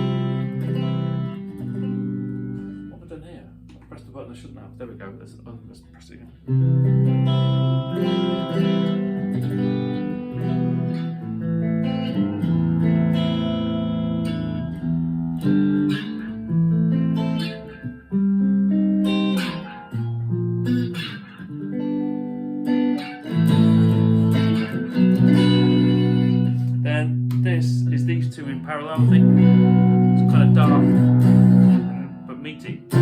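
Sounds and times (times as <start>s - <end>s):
clean electric guitar chords: 0.0s - 33.0s.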